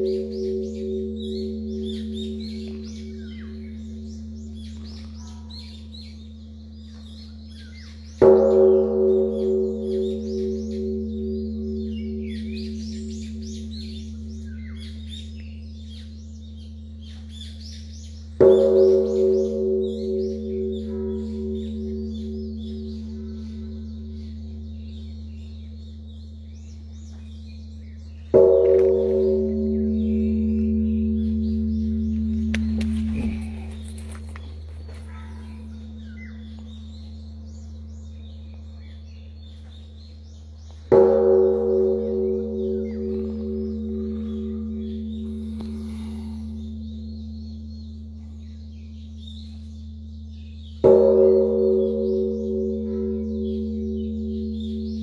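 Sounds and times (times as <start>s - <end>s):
small birds chirping: 0.0s - 41.1s, 42.6s - 51.1s
large bell ringing: 0.0s - 55.0s
steady low hum: 21.8s - 40.6s.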